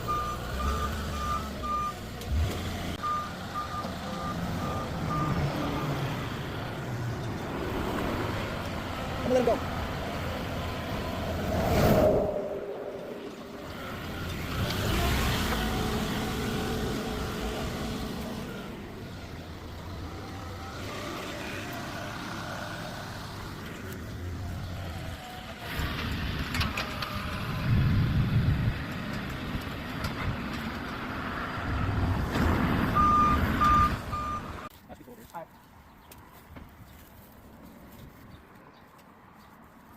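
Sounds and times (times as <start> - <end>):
heavy vehicle engine running: 0.0 - 11.4, 13.0 - 34.7.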